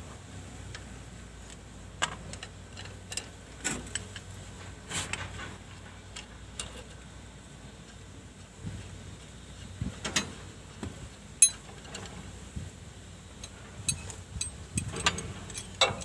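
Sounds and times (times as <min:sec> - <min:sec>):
steady low hum: 0:00.0 - 0:16.0
hand tools clicking on metal: 0:11.4 - 0:12.0, 0:13.4 - 0:16.0.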